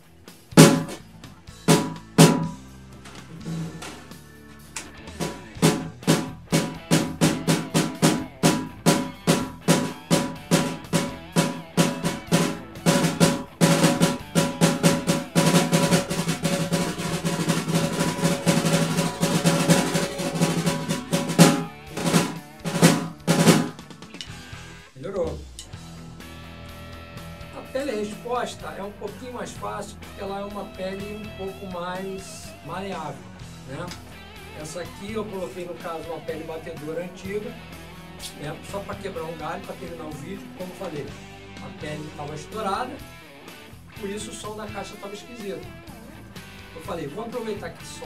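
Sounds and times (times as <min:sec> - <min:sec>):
snare drum played with sticks: 0:00.6 - 0:01.0, 0:01.7 - 0:02.6, 0:05.1 - 0:24.3.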